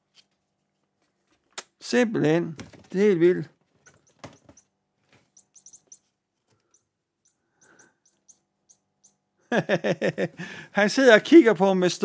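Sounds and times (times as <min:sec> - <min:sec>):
small pet squeaking: 0:03.8 - 0:09.2.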